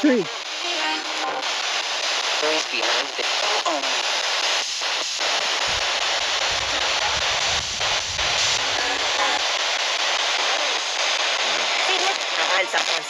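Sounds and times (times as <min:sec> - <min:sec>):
radio static hiss: 0:00.0 - 0:13.0
low rumble: 0:05.6 - 0:09.6.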